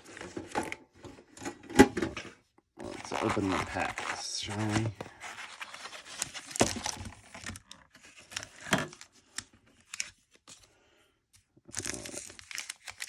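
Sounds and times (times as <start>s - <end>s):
foil packs crinkling and tearing: 2.9s - 9.1s, 11.7s - 13.0s.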